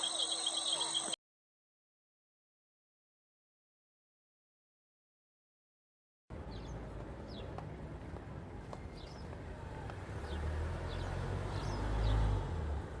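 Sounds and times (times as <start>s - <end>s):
small animals chirping: 0.0s - 1.2s.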